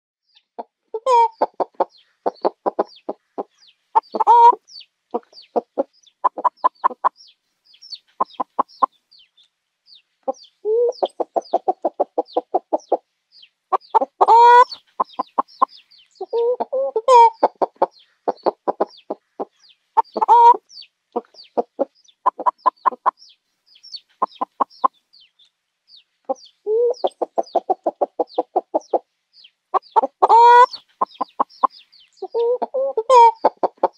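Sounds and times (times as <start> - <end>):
chickens clucking: 0.4 - 33.9
chicken drawn-out call: 0.9 - 4.6, 13.7 - 19.4, 20.0 - 20.7, 29.7 - 33.9.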